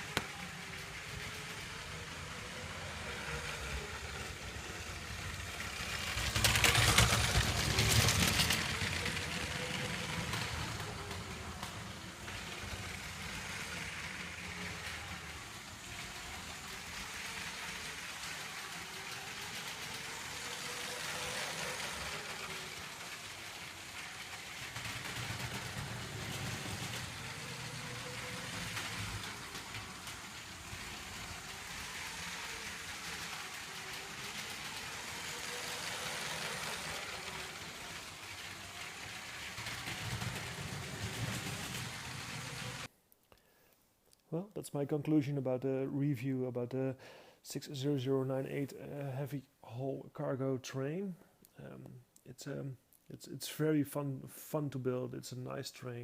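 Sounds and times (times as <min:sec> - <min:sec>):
electric toy train motor whirring: 0:00.0 - 0:42.9
wheels rattling along rails: 0:00.0 - 0:42.9.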